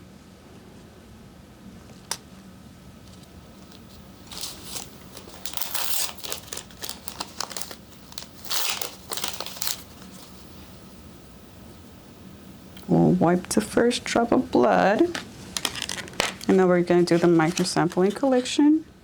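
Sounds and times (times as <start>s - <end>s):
wrapper crinkling: 3.6s - 10.7s, 14.9s - 18.6s.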